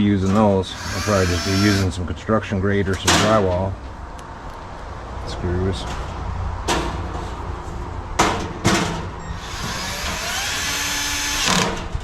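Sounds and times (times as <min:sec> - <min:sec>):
cordless drill driving screws: 0:00.7 - 0:01.9, 0:09.4 - 0:11.7.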